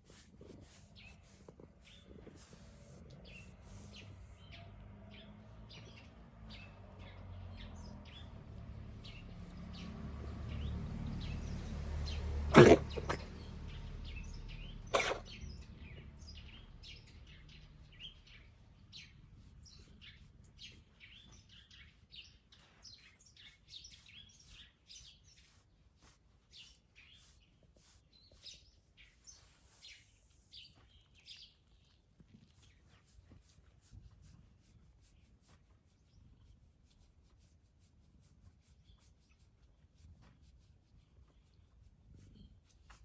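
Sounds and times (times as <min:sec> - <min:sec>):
small birds chirping: 0:00.0 - 0:43.0
cat sneezing: 0:12.5 - 0:13.3, 0:14.9 - 0:15.4.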